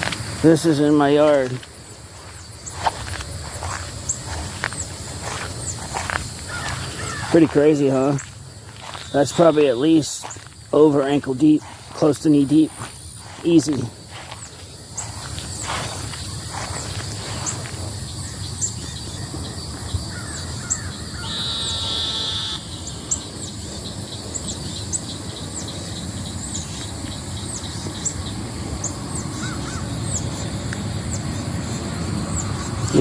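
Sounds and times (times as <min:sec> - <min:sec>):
harsh cawing bird call: 0:06.4 - 0:07.5, 0:20.1 - 0:23.3, 0:29.3 - 0:30.0.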